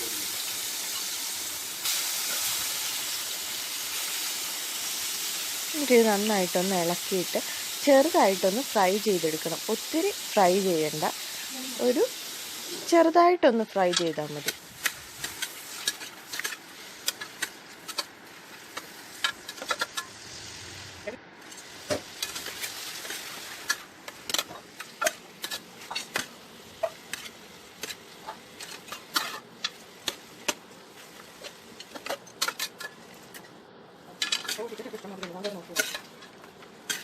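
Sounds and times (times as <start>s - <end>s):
chicken sizzling in hot oil: 0.0s - 13.0s, 13.6s - 33.4s
spatula scraping a pan: 13.9s - 33.5s, 34.2s - 37.0s.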